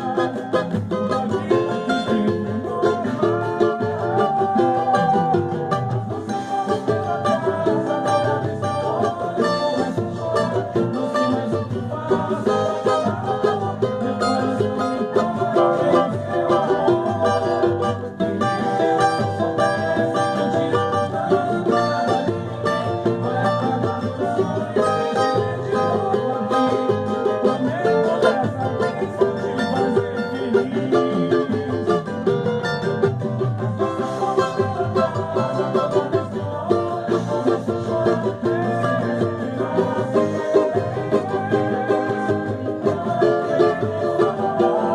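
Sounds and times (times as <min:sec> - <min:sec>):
plucked string music: 0:00.0 - 0:44.9.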